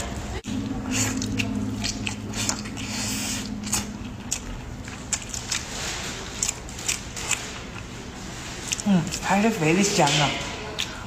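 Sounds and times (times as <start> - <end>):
chewing meat with wet smacks: 0.5 - 7.9.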